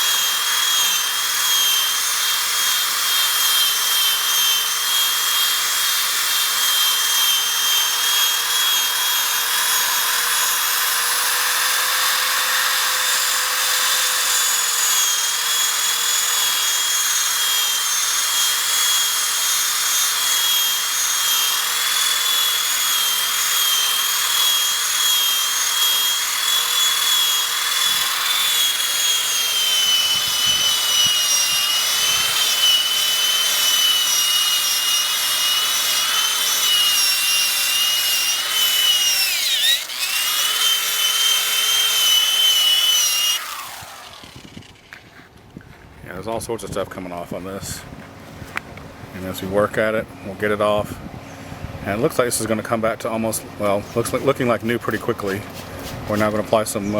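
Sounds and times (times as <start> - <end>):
polishing buffer whining: 0.0 - 45.1.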